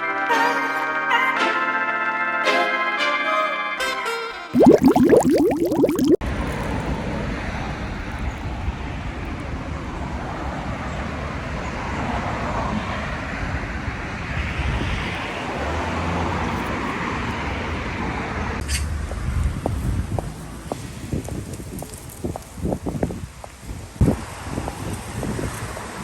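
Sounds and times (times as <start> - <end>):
passing cars: 6.3 - 21.5.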